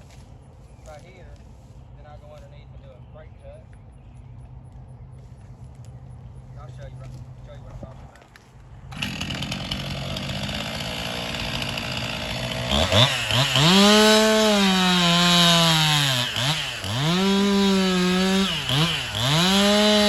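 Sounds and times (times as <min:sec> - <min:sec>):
chainsaw cutting log: 0:08.9 - 0:20.0.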